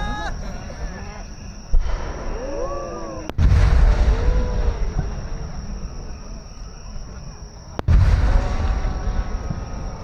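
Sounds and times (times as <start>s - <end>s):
firework shells booming: 1.7s - 6.4s, 7.7s - 10.0s.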